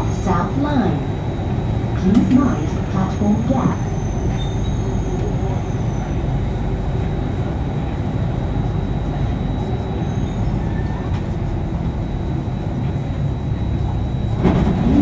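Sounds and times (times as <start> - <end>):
train low rumble: 0.0 - 15.0.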